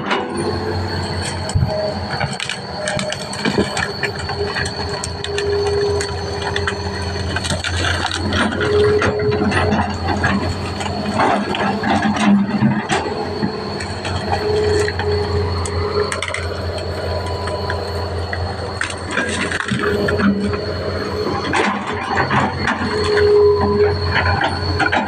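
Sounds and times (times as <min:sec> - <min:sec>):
excavator diesel engine running: 0:00.0 - 0:25.0
machine parts squealing: 0:00.0 - 0:25.0
metallic clanks and cracks: 0:01.2 - 0:20.6.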